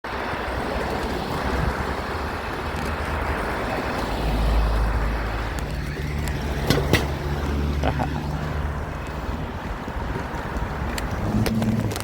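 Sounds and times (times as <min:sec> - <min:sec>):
road traffic rush: 0:00.0 - 0:12.0
vehicle passing: 0:00.1 - 0:12.0.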